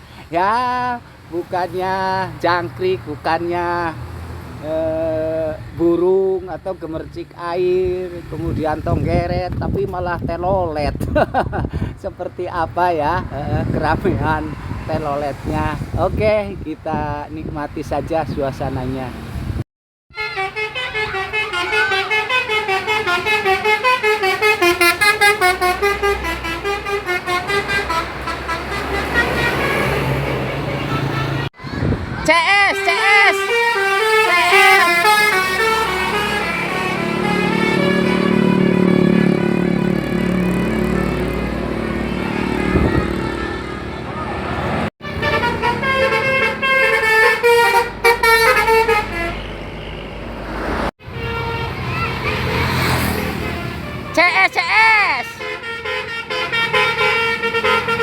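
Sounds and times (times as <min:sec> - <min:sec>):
multi-tone air horn tune: 0:20.1 - 0:31.4, 0:32.5 - 0:40.3, 0:45.0 - 0:49.5, 0:53.4 - 0:58.0
vehicle engine rumble: 0:20.2 - 0:54.2.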